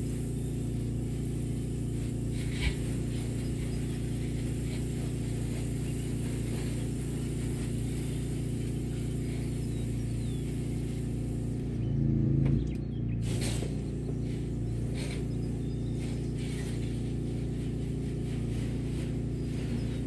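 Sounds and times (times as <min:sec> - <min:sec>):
engine humming: 0:00.0 - 0:20.0.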